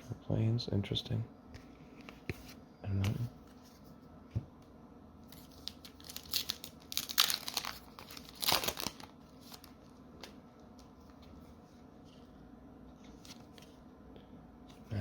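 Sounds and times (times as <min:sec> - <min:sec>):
foil wrapper crinkling: 0:05.3 - 0:09.8.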